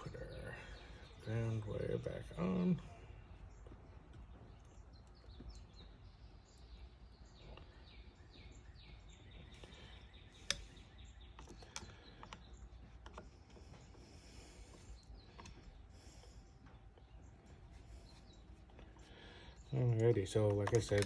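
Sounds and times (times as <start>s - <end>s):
faint bird chirps: 0.0s - 20.6s
sharp clicks: 9.6s - 13.6s, 19.8s - 21.0s.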